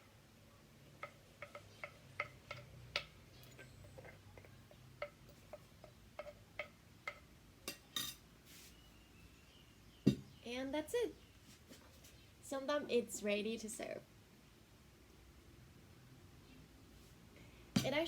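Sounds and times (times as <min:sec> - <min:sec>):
utensil tapping a plate: 0:01.0 - 0:03.2, 0:05.0 - 0:08.2.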